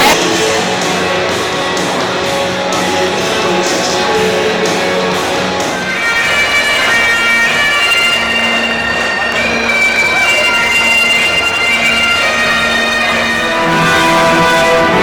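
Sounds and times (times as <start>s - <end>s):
loud music with steady beat: 0.0s - 10.8s, 11.4s - 15.0s
stadium crowd: 0.0s - 15.0s.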